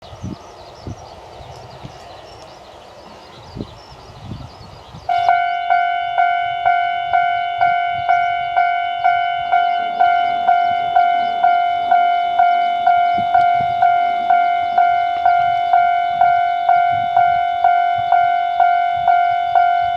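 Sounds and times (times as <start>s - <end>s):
wind noise: 0.0s - 19.9s
level crossing alarm bell: 5.1s - 19.9s.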